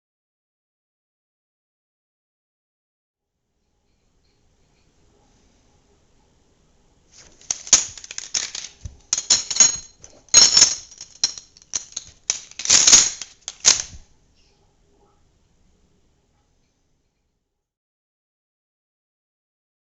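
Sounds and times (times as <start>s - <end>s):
pistol parts clicking and sliding: 7.2s - 14.0s.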